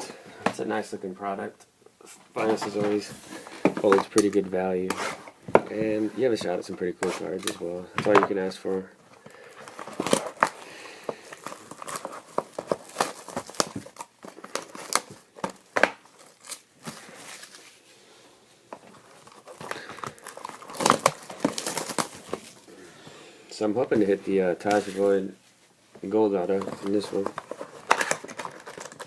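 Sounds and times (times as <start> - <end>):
card pack wrapping crinkling: 9.2 - 17.8, 18.8 - 22.7, 26.1 - 29.0.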